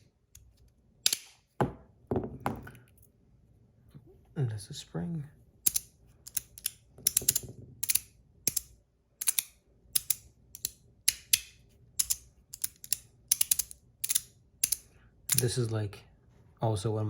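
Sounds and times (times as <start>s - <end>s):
magnetic pieces snapping together: 0.4s - 1.4s, 5.6s - 15.6s.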